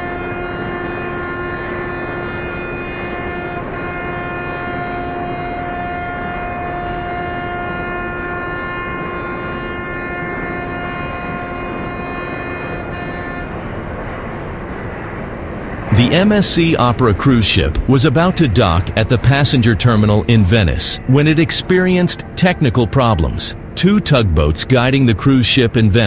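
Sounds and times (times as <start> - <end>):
ship's horn blast: 0.0 - 14.0
rushing background noise: 11.8 - 26.0.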